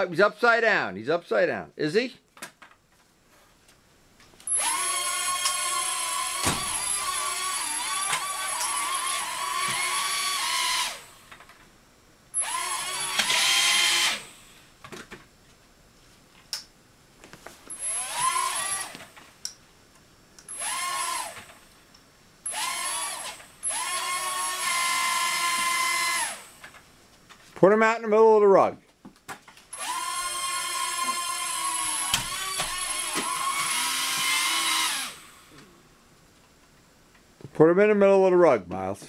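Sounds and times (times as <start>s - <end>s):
toy drone motors whining: 4.5s - 11.2s, 12.4s - 14.4s, 17.7s - 19.1s, 20.5s - 21.6s, 22.4s - 26.6s, 29.7s - 35.5s.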